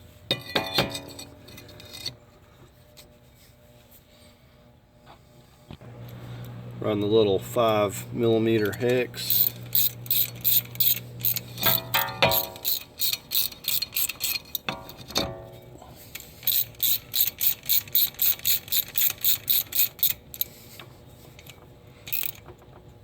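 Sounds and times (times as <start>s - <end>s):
hand ratchet clicking: 8.6s - 15.1s, 16.1s - 20.6s, 21.4s - 22.4s
short metallic ring: 9.3s - 14.4s.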